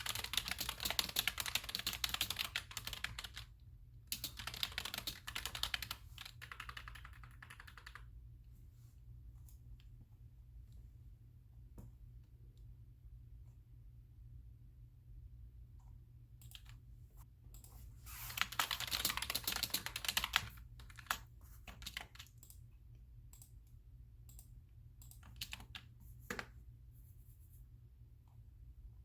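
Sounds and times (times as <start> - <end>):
keyboard typing: 0.0 - 8.2, 16.4 - 16.8, 17.5 - 22.7, 24.3 - 26.6.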